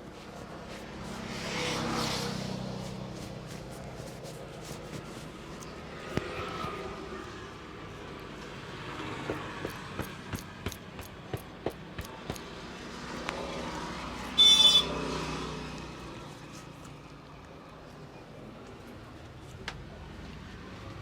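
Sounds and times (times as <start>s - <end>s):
road traffic passing: 0.0s - 21.0s
vehicle horn beep: 14.4s - 15.1s.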